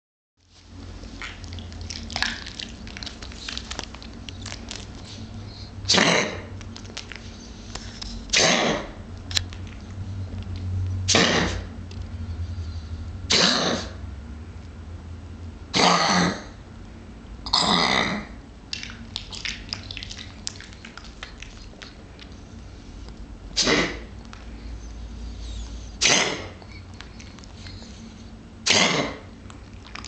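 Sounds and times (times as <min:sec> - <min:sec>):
pet coughing: 0:05.9 - 0:06.5, 0:08.3 - 0:09.0, 0:11.1 - 0:11.7, 0:13.3 - 0:14.0, 0:15.7 - 0:16.6, 0:23.6 - 0:24.1, 0:25.9 - 0:27.0, 0:28.6 - 0:29.4.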